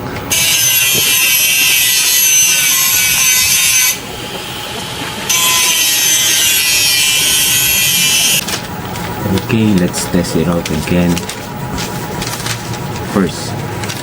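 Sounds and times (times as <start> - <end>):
small motor whining: 0.3 - 8.4.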